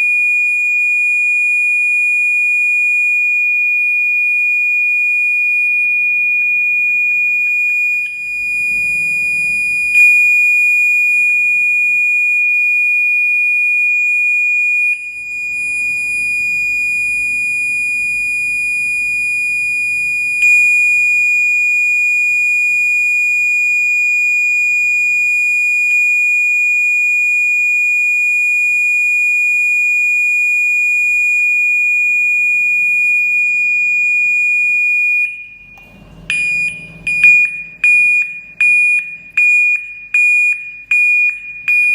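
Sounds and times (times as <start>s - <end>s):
electronic horn high tone: 7.8s - 11.5s, 35.3s - 41.9s.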